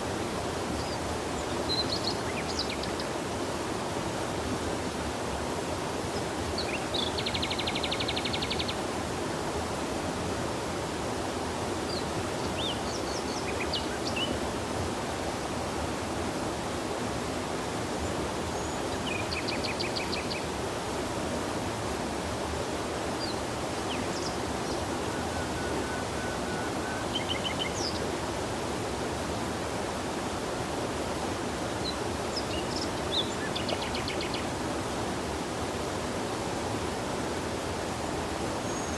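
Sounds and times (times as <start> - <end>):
stream rushing: 0.0 - 38.9
birds trilling and chirping: 24.6 - 28.0.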